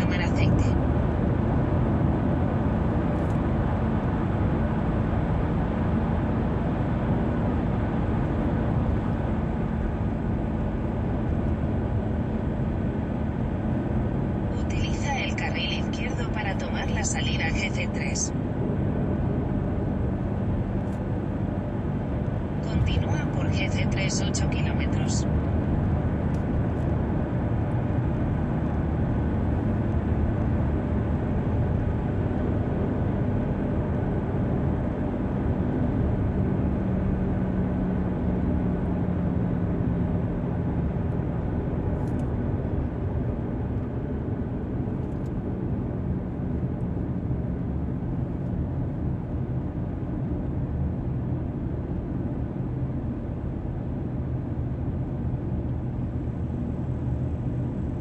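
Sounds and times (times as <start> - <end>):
low hum: 0.0 - 31.6
car engine and tyre noise: 0.0 - 58.0.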